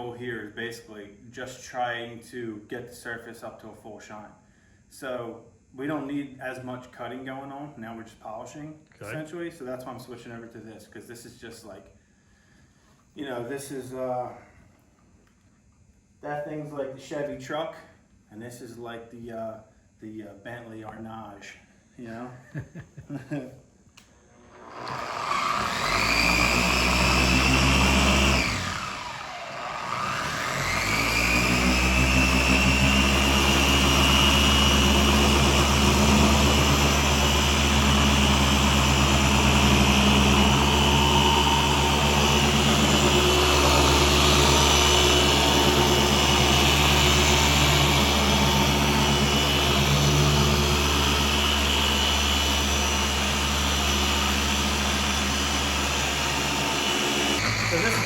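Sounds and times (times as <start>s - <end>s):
electric polisher motor whine: 24.3s - 58.0s.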